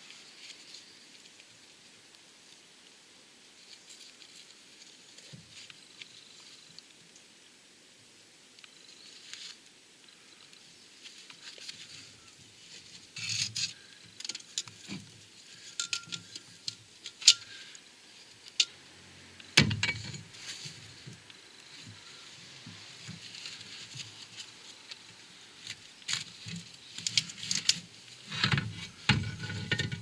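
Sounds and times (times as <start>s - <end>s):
metallic clicks and scrapes: 13.2s - 17.6s, 25.7s - 30.0s.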